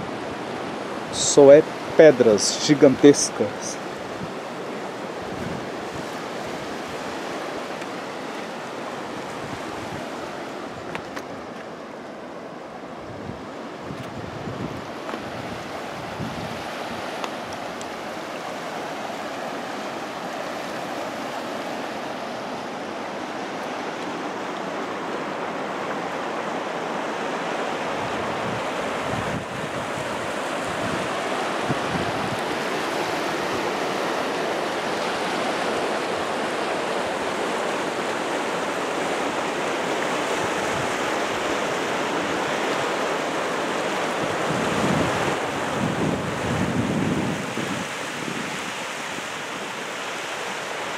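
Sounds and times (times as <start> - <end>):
waterfall rushing: 0.0 - 50.9.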